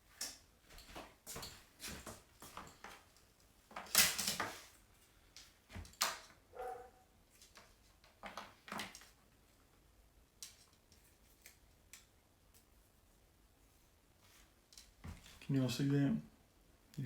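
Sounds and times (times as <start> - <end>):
rustles and knocks at a desk: 14.3 - 15.4.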